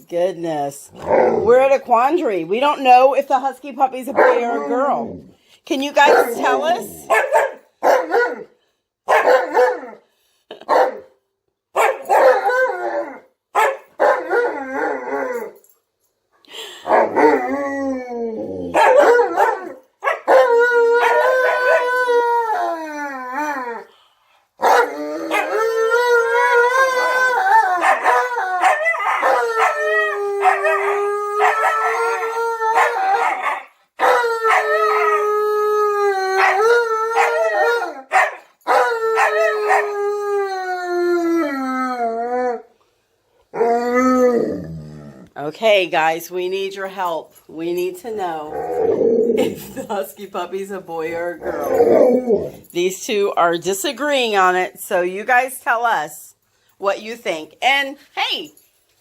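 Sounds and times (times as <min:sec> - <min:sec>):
dogs howling: 0:06.0 - 0:08.4, 0:12.1 - 0:13.3, 0:14.1 - 0:15.6, 0:16.9 - 0:23.9, 0:24.6 - 0:42.7, 0:48.5 - 0:49.8, 0:51.1 - 0:52.7.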